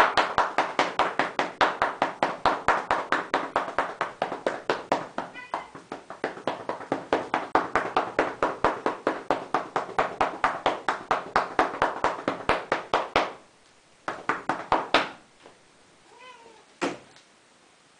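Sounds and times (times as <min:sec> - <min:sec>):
cat meowing: 0:05.3 - 0:05.8, 0:16.0 - 0:16.7.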